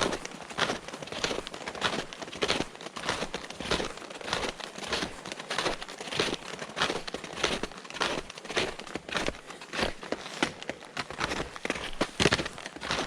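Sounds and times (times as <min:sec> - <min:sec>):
footsteps crunching on trail: 0:00.0 - 0:13.0.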